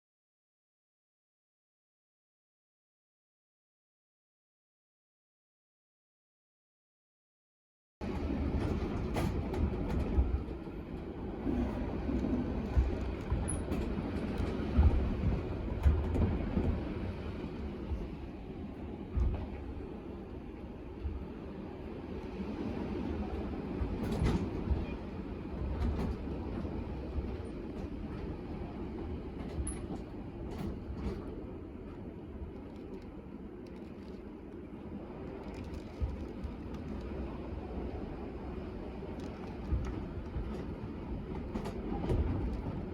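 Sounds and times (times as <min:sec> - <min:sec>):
strong wind rumble: 0:08.0 - 0:42.9.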